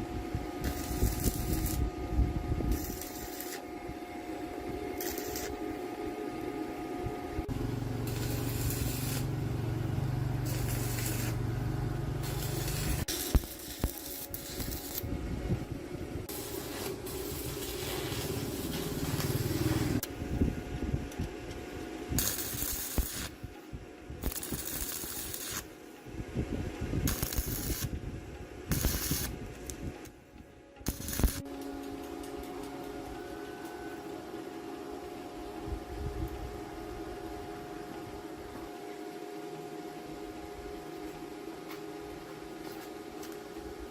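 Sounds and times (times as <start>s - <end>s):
motor humming: 0.0s - 20.9s
hissing spray: 16.3s - 20.0s.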